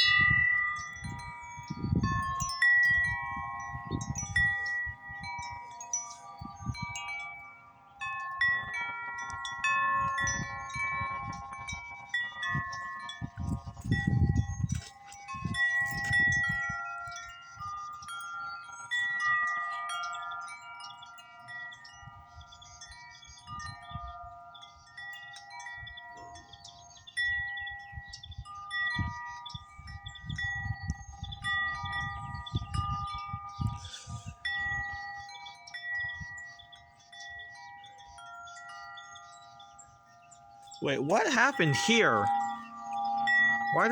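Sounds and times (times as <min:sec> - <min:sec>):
wind buffeting microphone: 0:00.0 - 0:07.2, 0:09.4 - 0:17.8, 0:27.2 - 0:35.2
wind chimes ringing: 0:00.0 - 0:43.9.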